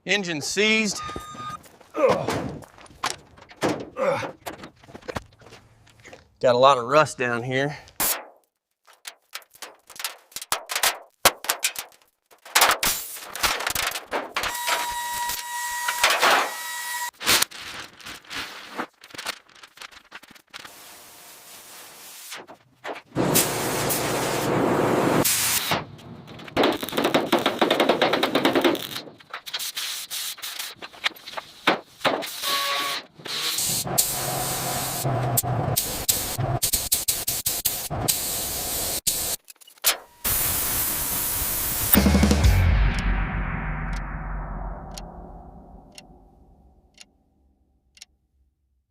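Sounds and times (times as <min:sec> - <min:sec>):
hiss: 0:20.6 - 0:22.4, 0:23.2 - 0:24.5, 0:25.2 - 0:25.8, 0:29.5 - 0:30.8, 0:33.3 - 0:39.4, 0:40.3 - 0:42.0
power tool hissing with hum: 0:40.2 - 0:41.9.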